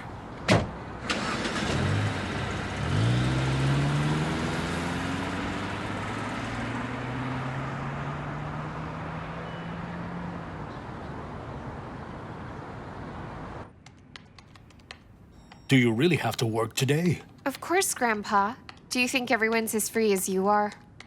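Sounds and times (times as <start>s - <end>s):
car engine revving: 1.1s - 9.3s.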